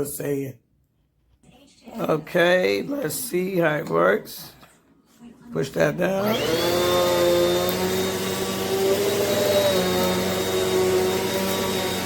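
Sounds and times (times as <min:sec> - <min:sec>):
vacuum cleaner motor whining: 0:06.0 - 0:12.0.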